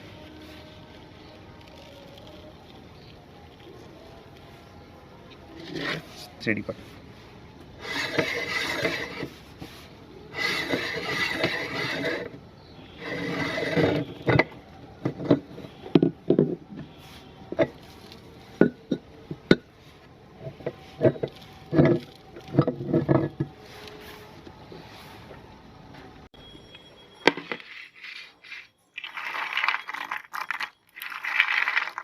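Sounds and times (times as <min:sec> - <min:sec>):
meat grinder grinding: 0:10.4 - 0:12.2, 0:29.0 - 0:32.0.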